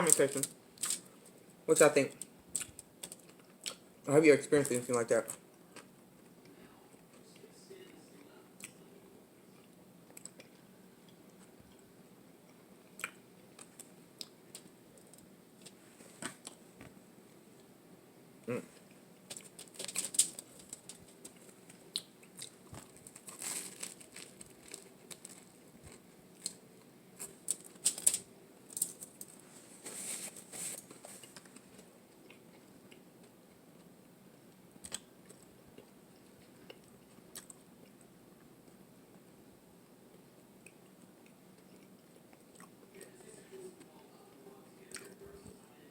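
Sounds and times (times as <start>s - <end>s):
person eating crunchy sandwich: 18.5s - 28.2s.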